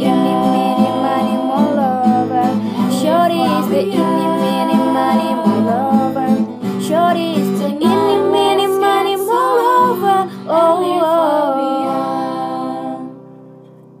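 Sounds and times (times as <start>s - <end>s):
person singing pop song: 0.0s - 13.2s.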